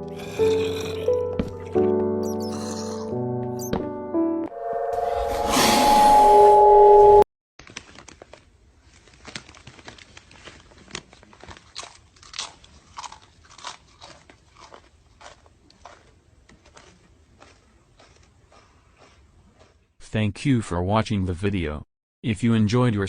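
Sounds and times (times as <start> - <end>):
music: 0.0 - 7.2
close crunching and clicking: 7.6 - 19.8.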